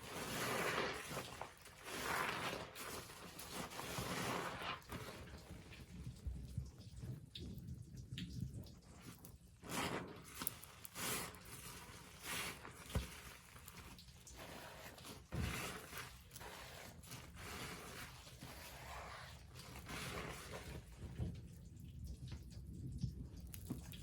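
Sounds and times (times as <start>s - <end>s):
sponge squelching: 0.0s - 6.2s, 8.7s - 21.6s
crackling foam: 0.0s - 22.6s.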